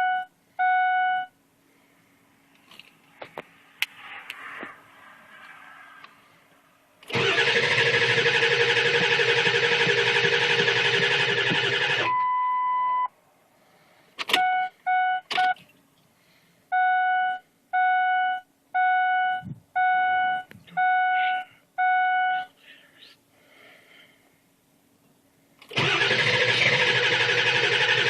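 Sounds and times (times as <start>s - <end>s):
diesel starter cranking: 7.0s - 12.1s, 25.6s - 28.0s
dashboard warning chime: 12.0s - 13.1s, 16.8s - 22.5s
short beeps: 12.0s - 13.1s.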